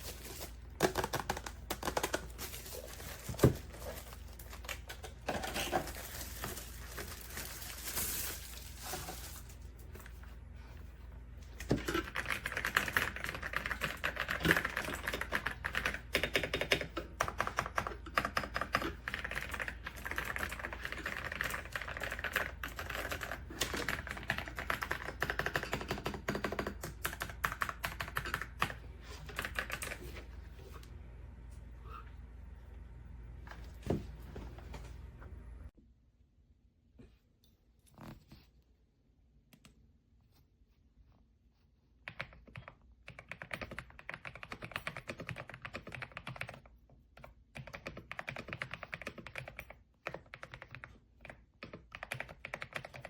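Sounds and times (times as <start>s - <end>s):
mechanical keyboard typing: 11.8s - 30.0s, 42.1s - 53.0s.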